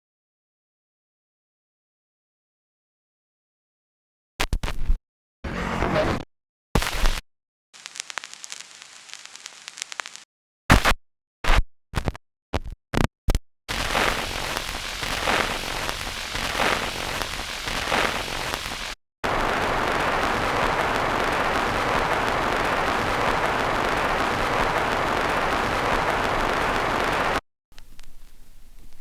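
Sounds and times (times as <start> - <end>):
vinyl record crackle and hiss: 7.8 - 10.3, 13.7 - 29.0
rhythmic record swish: 13.7 - 27.4.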